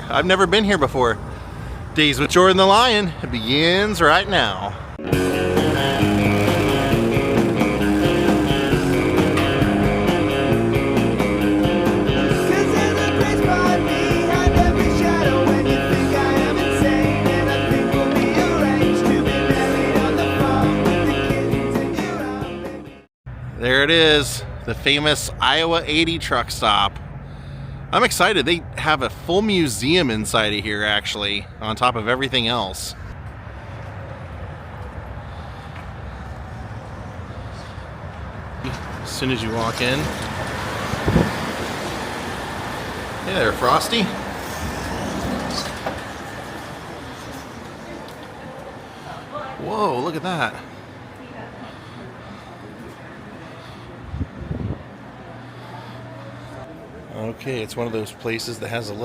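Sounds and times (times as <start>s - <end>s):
low rumble of road traffic: 0.0s - 59.0s
rock music with electric guitar: 5.0s - 23.0s.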